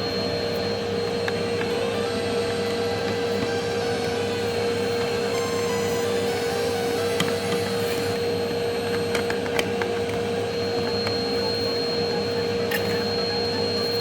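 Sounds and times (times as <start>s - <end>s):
vacuum cleaner whining: 0.0s - 14.0s.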